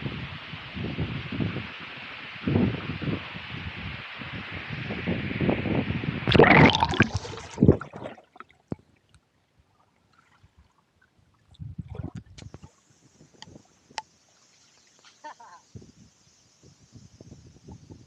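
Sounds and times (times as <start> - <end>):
water splashing and gurgling: 6.3 - 9.1, 9.8 - 12.9.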